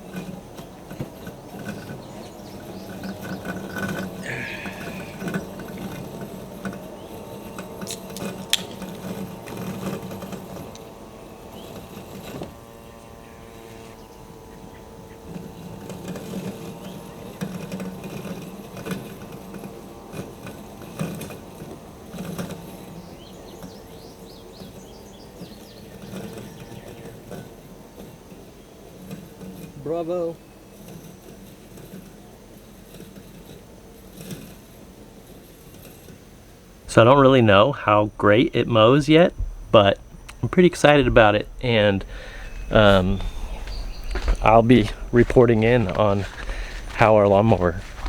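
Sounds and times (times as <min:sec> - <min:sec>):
electric motors whirring: 0:00.0 - 0:29.8, 0:30.6 - 0:48.0
uneven low rumble: 0:36.9 - 0:48.0.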